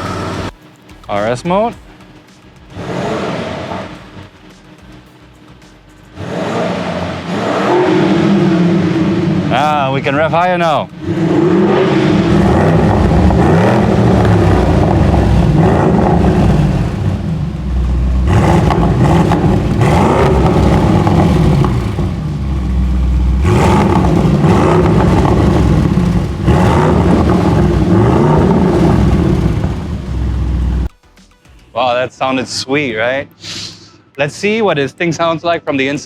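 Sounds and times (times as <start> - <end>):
car engine revving: 0.0 - 0.6, 2.6 - 4.5, 6.0 - 30.9.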